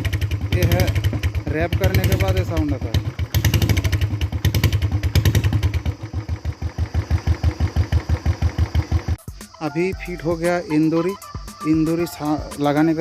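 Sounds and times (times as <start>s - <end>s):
motorcycle engine revving and idling: 0.0s - 9.5s.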